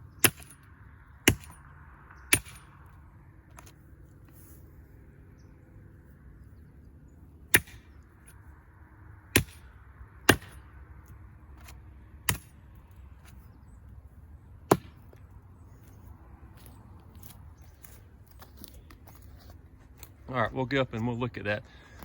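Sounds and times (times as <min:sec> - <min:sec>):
brush knife chopping wood: 0:07.5 - 0:07.9, 0:09.3 - 0:09.6, 0:11.6 - 0:12.6, 0:14.7 - 0:15.2.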